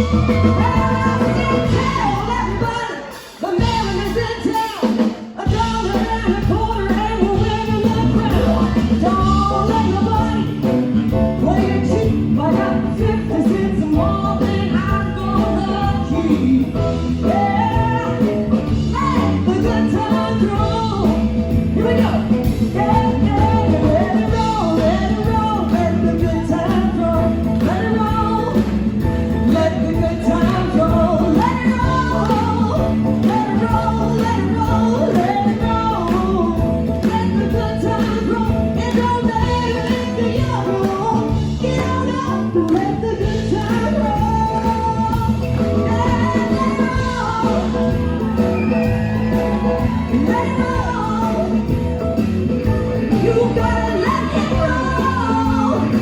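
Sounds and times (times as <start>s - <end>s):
live blues rock band: 0.0s - 56.0s
person singing: 0.0s - 56.0s.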